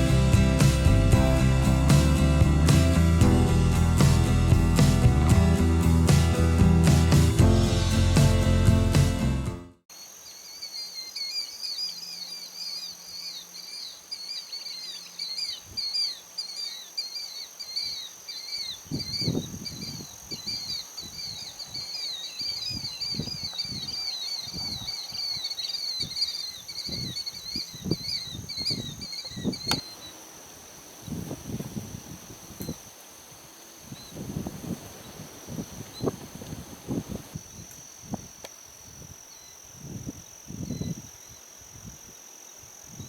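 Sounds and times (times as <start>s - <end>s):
high-pitched insect drone: 9.9s - 43.0s
songbird singing: 9.9s - 43.0s.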